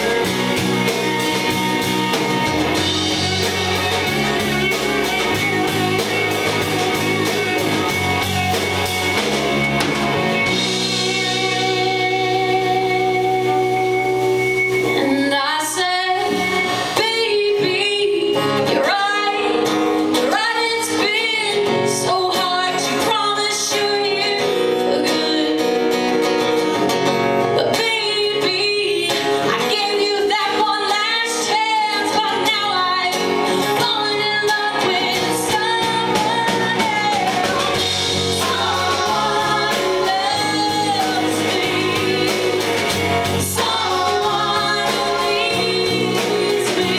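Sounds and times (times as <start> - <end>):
live band with guitar: 0.0 - 46.9
woman singing: 11.0 - 26.2, 27.6 - 46.9.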